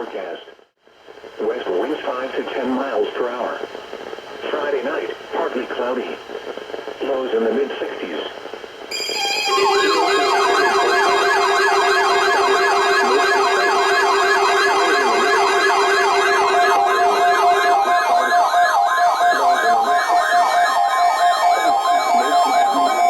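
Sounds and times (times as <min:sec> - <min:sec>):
siren-like alert sweep: 0:08.9 - 0:23.0
steady beeping tones: 0:08.9 - 0:23.0.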